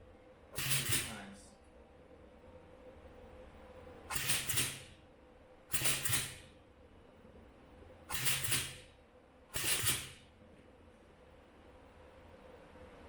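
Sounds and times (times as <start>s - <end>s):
crimping machine hissing bursts: 8.1s - 8.9s, 9.6s - 10.2s.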